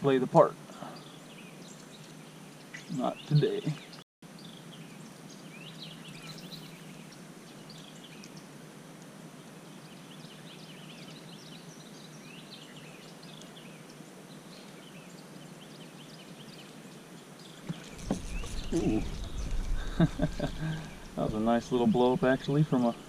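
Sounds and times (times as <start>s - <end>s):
low background noise: 0.0s - 23.0s
small birds chirping: 0.7s - 8.6s, 9.3s - 23.0s.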